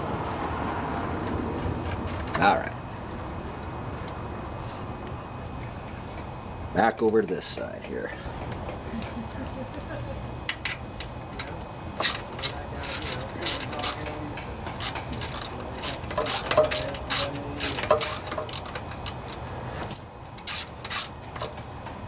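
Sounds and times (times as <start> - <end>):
ratchet wrench strokes: 11.4 - 22.0.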